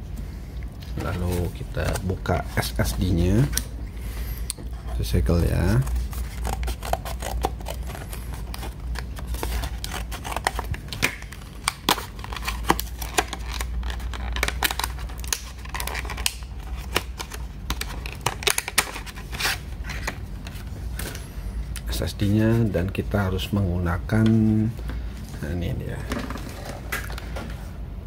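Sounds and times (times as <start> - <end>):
low steady hum: 0.0 - 28.0
plastic and cardboard crinkling: 4.9 - 21.2.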